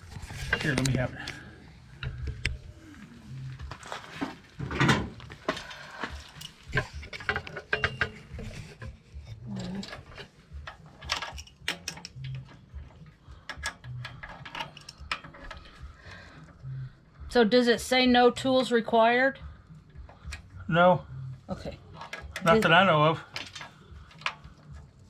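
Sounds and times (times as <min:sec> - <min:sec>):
wrench clicking on metal: 0:09.5 - 0:12.6, 0:13.4 - 0:15.8.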